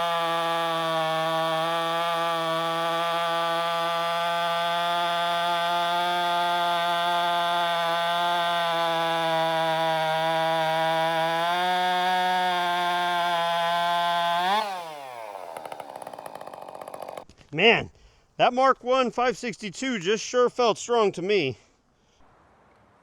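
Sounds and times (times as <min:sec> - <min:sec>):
chainsaw revving and idling: 0:00.0 - 0:17.3.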